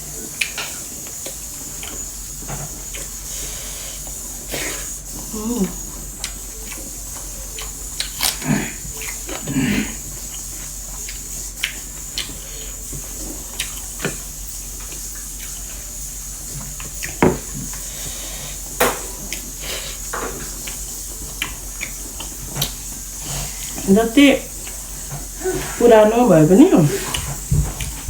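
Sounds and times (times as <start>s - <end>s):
chewing and mouth smacks: 6.2s - 9.5s, 10.2s - 14.2s, 20.3s - 23.1s.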